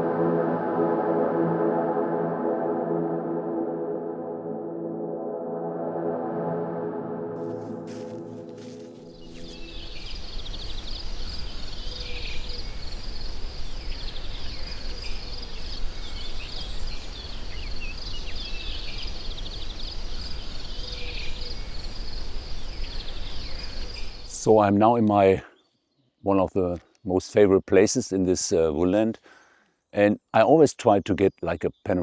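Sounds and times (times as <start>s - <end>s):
songbirds trilling: 7.4s - 27.0s.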